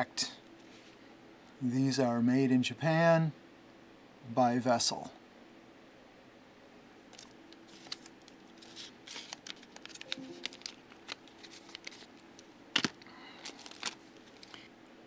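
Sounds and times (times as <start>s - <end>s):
plastic rustling: 7.0s - 14.8s.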